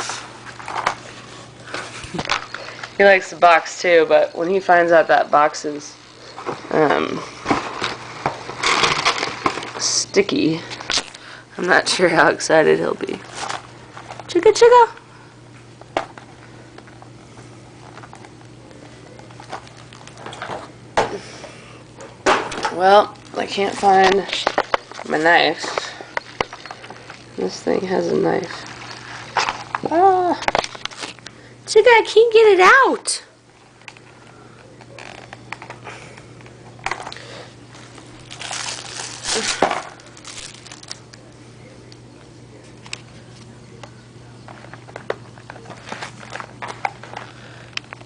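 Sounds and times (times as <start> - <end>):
packaging crinkling and rustling: 0.0 - 3.1, 6.1 - 10.0, 13.1 - 14.3, 19.2 - 20.7, 22.6 - 31.3, 33.8 - 35.8, 36.4 - 41.3, 44.5 - 48.0.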